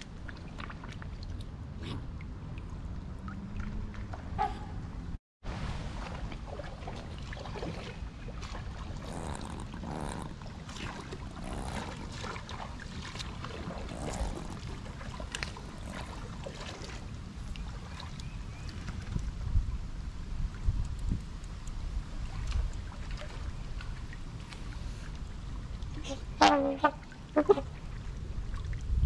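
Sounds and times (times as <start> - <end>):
water splashes: 0.0 - 29.0
wind rumbling on microphone: 0.0 - 29.0
faint ticks: 20.8 - 21.8.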